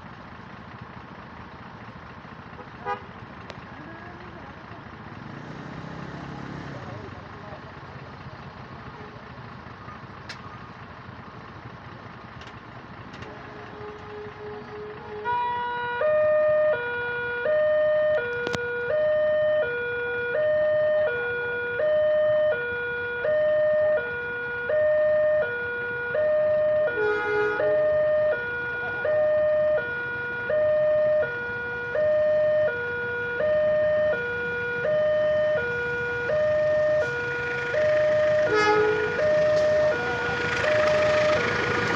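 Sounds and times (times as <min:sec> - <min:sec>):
two-tone level-crossing siren: 0:13.6 - 0:41.9.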